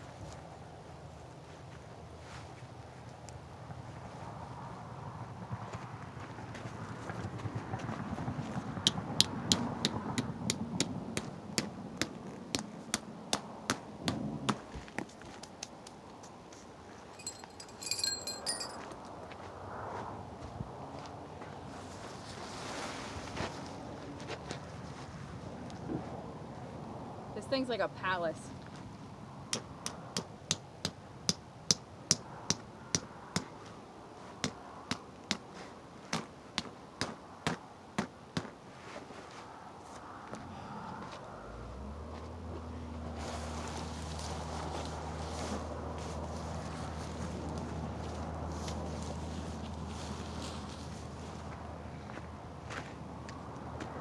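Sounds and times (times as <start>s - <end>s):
rustling: 16.9s - 18.9s, 48.1s - 51.6s.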